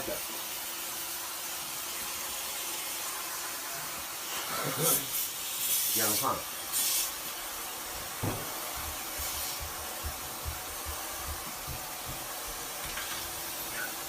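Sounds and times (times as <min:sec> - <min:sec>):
spray hissing: 0:00.0 - 0:14.0.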